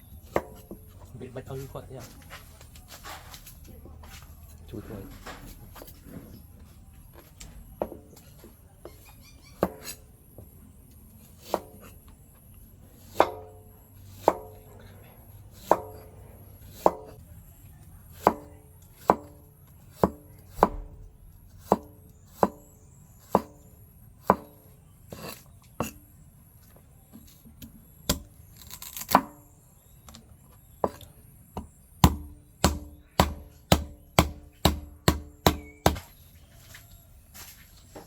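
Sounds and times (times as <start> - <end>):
knife chopping on cutting board: 15.6 - 16.1, 16.7 - 17.2, 18.2 - 20.9, 21.6 - 23.6, 24.2 - 26.0, 31.6 - 36.1.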